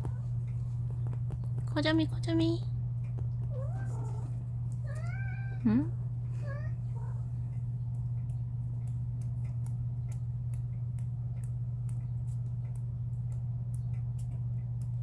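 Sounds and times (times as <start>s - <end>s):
steady low hum: 0.0s - 15.0s
light clicks and ticks: 7.4s - 15.0s.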